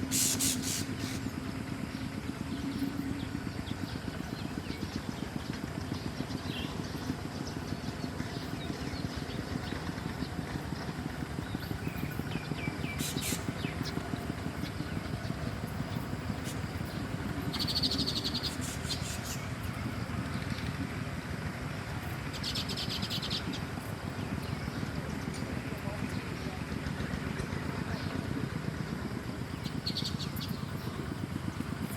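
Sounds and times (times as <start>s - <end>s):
rapid high bird trills: 0.1s - 1.4s, 12.7s - 14.0s, 17.5s - 19.8s.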